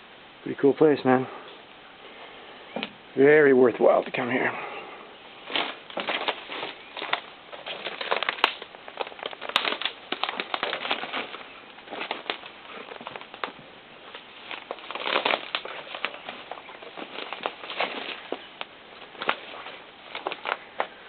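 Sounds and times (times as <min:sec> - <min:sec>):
twigs and brush crackling underfoot: 0:05.3 - 0:21.0.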